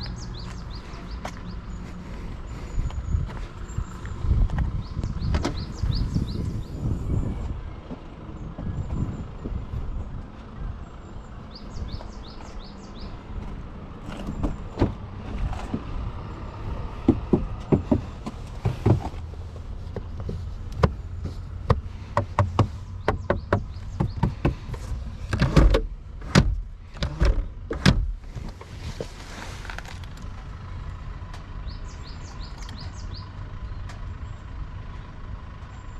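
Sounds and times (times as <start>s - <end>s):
car engine running: 0.0s - 35.9s
engine knocking: 17.0s - 19.2s, 20.1s - 24.9s.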